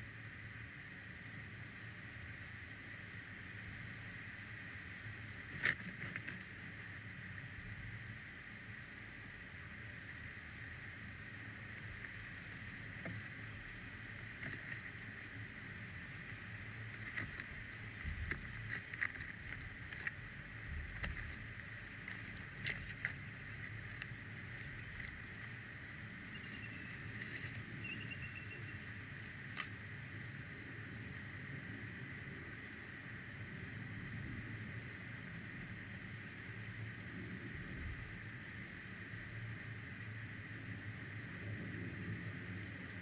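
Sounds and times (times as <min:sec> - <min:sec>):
low wind rumble: 0:00.0 - 0:43.0
steady hiss: 0:00.0 - 0:43.0
light clicks and rustles: 0:16.3 - 0:25.6
faint high chirps: 0:27.8 - 0:28.8.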